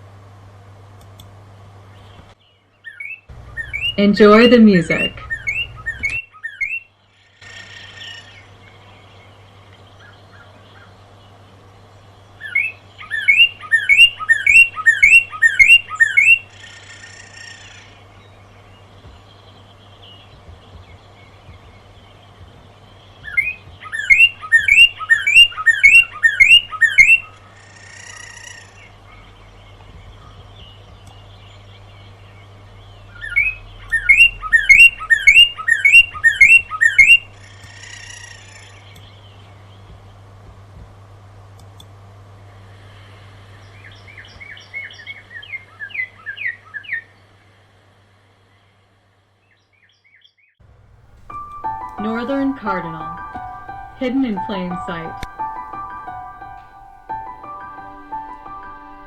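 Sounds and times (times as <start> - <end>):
bird singing whistles: 33.2 - 37.3.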